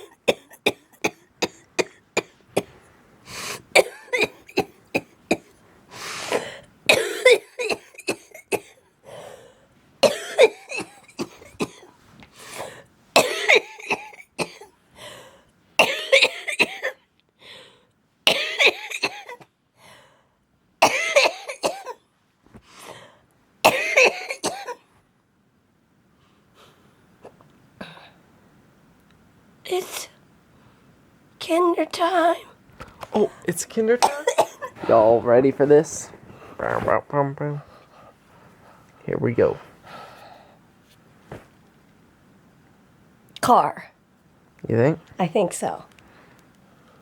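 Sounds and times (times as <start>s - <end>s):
person coughing: 3.5s - 5.5s, 6.3s - 8.8s, 10.0s - 11.9s, 13.2s - 14.7s, 15.8s - 17.0s, 18.3s - 19.4s, 20.8s - 22.0s, 23.7s - 24.8s, 34.0s - 35.2s.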